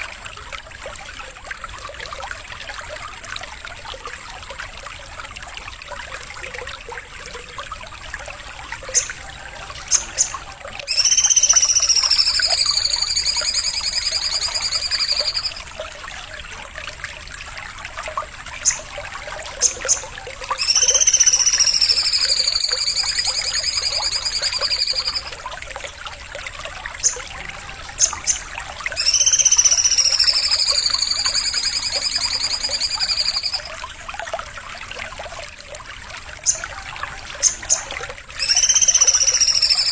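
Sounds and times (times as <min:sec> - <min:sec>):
water trickling: 0:00.0 - 0:39.9
songbird buzzy trilled calls: 0:08.8 - 0:15.7, 0:18.5 - 0:18.9, 0:19.5 - 0:25.4, 0:27.0 - 0:33.8, 0:36.4 - 0:39.9.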